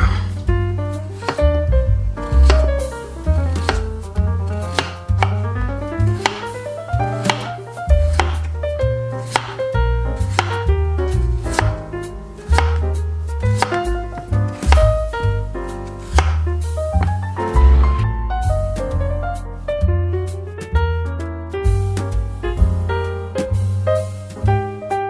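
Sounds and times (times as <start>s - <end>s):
knife chopping on cutting board: 0.0s - 1.6s, 2.2s - 18.0s
background music: 0.0s - 25.0s.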